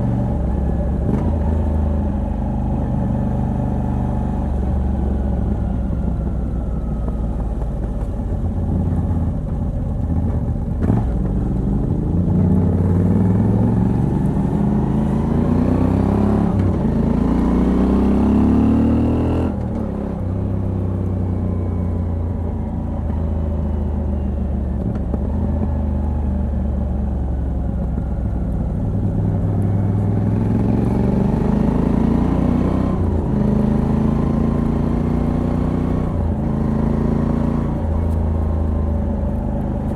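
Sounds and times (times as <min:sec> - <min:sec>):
motorcycle engine revving: 0:08.6 - 0:21.0, 0:28.9 - 0:39.9.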